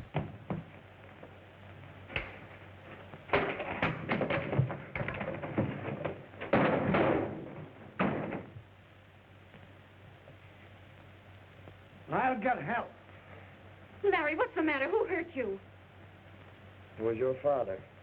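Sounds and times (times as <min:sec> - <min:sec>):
fistfight thuds and knocks: 0:03.3 - 0:08.7.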